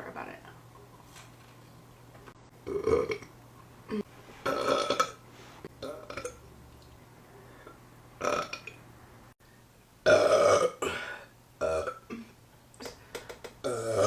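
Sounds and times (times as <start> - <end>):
woman burping: 2.6 - 3.3, 3.9 - 5.2, 5.8 - 6.4, 10.1 - 12.4, 13.6 - 14.0.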